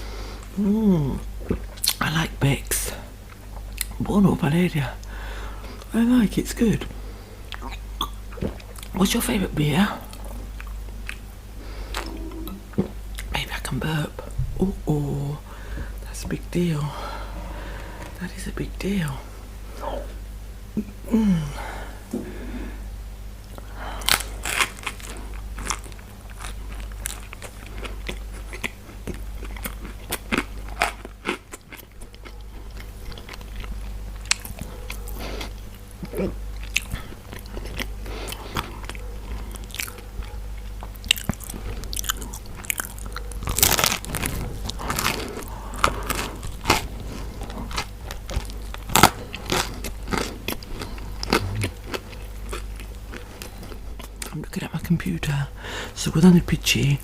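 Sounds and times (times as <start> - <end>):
faint low hum: 0.0 - 57.0
crunchy chewing: 10.0 - 13.6, 23.4 - 54.4.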